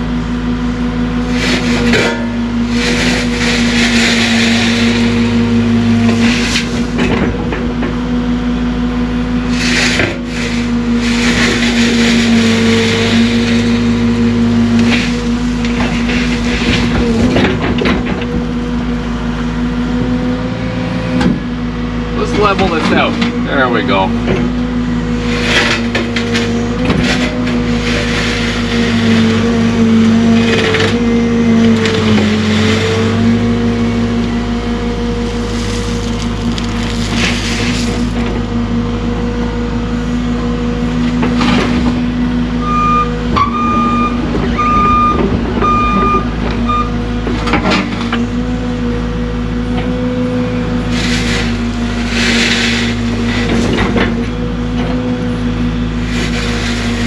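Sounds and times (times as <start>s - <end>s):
excavator diesel engine running: 0.0s - 57.0s
short beeps: 42.6s - 46.9s.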